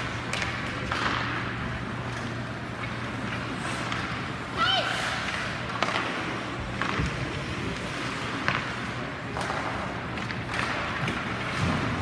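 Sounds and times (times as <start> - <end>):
hockey sticks clacking: 0.0 - 12.0
skates scraping ice: 0.0 - 12.0.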